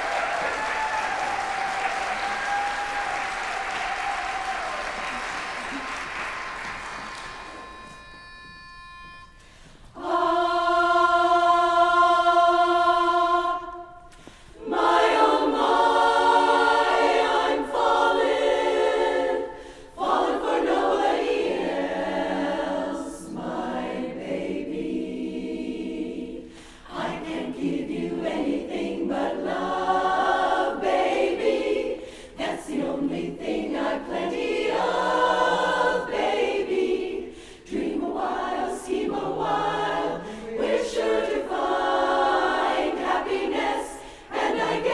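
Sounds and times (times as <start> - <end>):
chorus singing in close harmony: 9.9 - 44.9.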